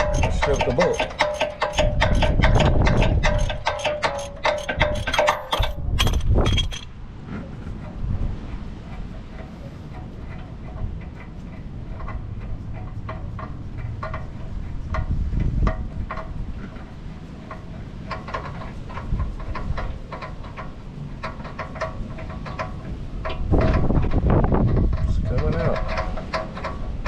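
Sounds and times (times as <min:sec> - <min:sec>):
metallic tool clicks: 0:00.0 - 0:06.9.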